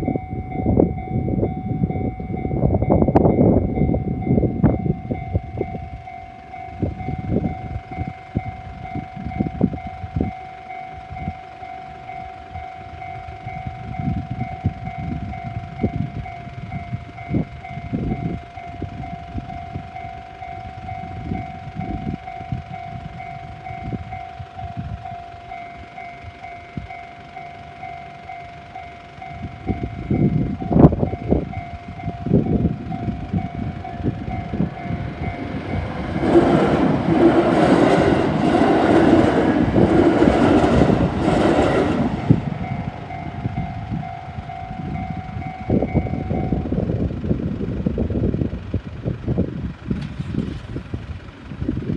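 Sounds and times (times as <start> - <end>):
level crossing warning bell: 0.0 - 48.0
electric train rumbling past: 0.0 - 51.9
train wheels thudding over rails: 32.5 - 46.4.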